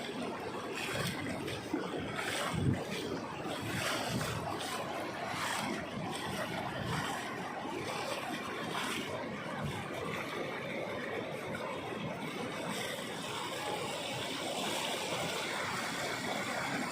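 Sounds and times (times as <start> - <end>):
wind buffeting microphone: 0.0 - 12.5
rushing river water: 0.0 - 16.9.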